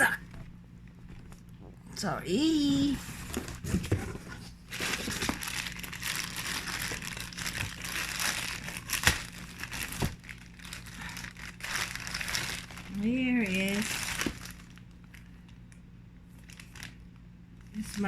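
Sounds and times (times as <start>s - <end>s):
packaging crinkling and rustling: 2.8s - 15.5s, 16.4s - 18.0s.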